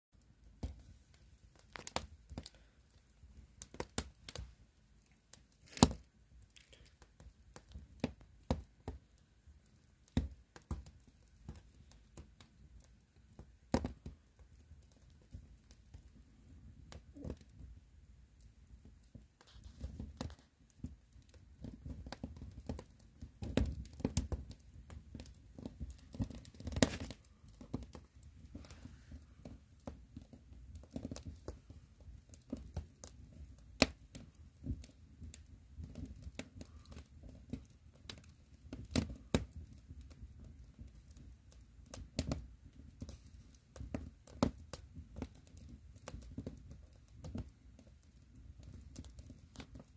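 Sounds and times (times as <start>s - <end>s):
firewood crackling and popping: 0.2s - 49.9s
low rumble of flame: 0.4s - 49.9s.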